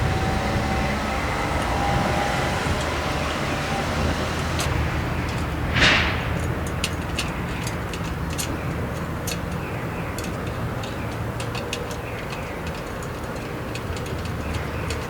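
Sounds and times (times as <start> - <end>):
low fire rumble: 0.0 - 8.2.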